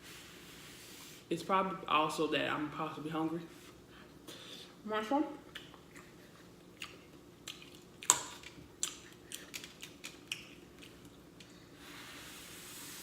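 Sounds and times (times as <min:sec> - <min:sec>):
chewing and lip smacking: 0:05.5 - 0:11.6.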